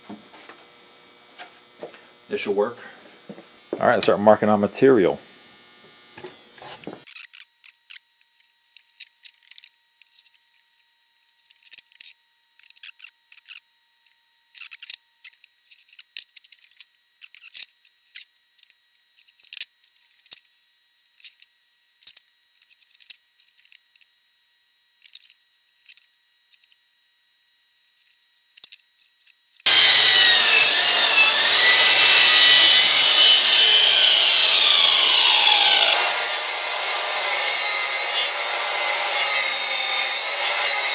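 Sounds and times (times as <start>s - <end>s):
power saw cutting: 29.7s - 40.9s.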